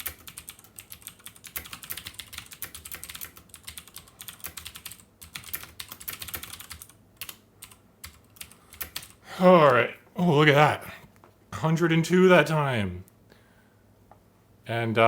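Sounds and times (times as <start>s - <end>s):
fast typing on keyboard: 0.0s - 9.2s.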